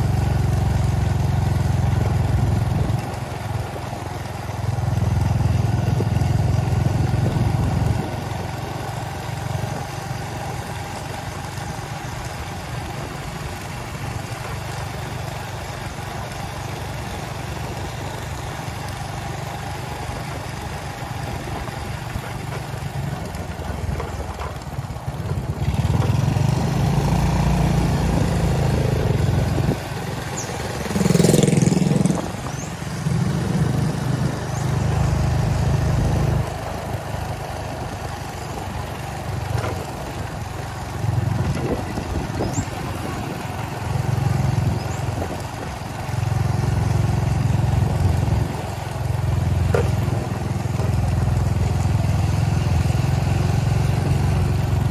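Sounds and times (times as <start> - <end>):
vehicle engine running: 0.0 - 54.9.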